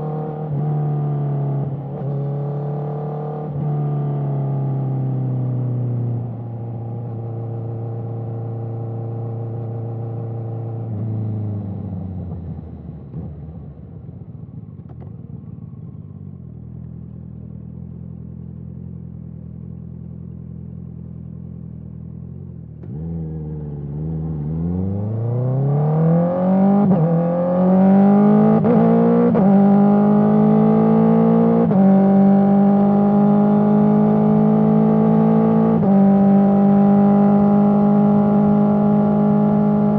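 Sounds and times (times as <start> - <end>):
motorcycle engine accelerating: 7.1 - 39.9.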